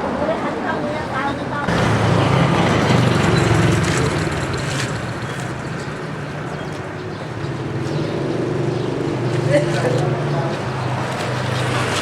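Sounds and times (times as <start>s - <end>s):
vehicle engine running: 1.7s - 5.9s.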